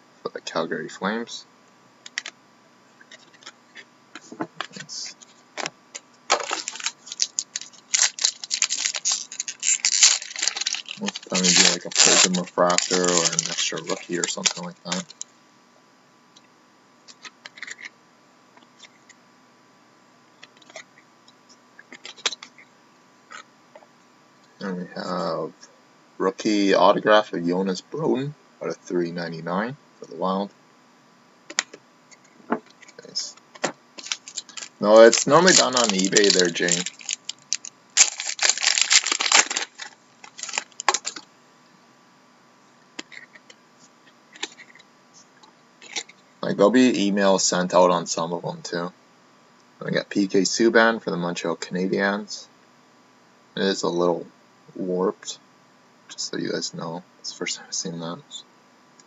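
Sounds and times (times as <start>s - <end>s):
trading cards clicking and scraping: 6.3s - 15.2s, 17.1s - 17.9s, 31.5s - 41.2s.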